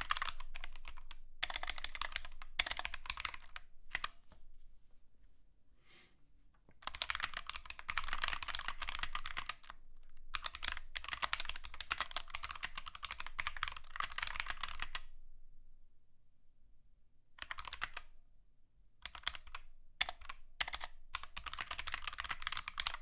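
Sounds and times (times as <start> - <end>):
mechanical keyboard typing: 0.0 - 4.2, 6.8 - 15.1, 17.4 - 18.1, 19.0 - 23.0.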